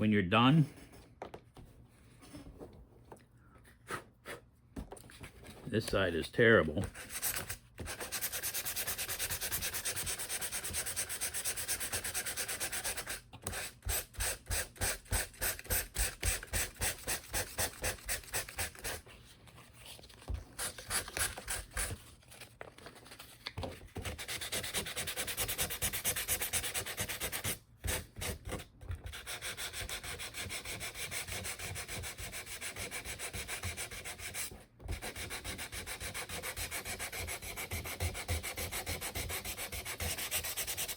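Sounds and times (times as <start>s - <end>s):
sandpaper rubbing on wood: 7.0s - 14.4s, 29.2s - 40.9s.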